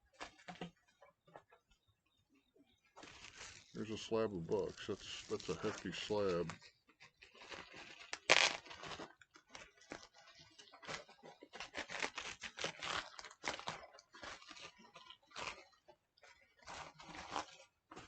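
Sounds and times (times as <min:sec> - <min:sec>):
comic books being handled: 0:03.0 - 0:06.6
packaging crinkling: 0:03.0 - 0:15.7.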